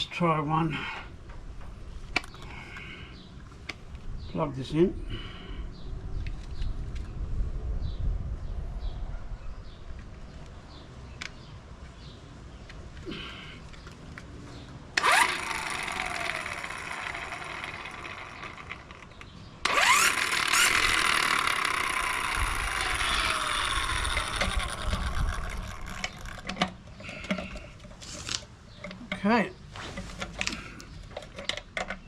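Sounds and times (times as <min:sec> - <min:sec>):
electric impact wrench whining: 0:15.0 - 0:27.6.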